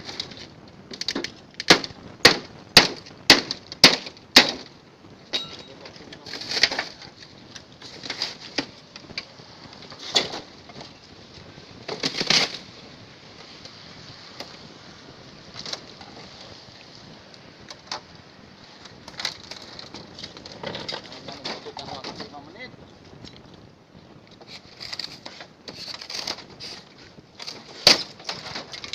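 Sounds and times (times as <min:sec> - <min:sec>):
refrigerator being broken apart: 0:27.4 - 0:28.9.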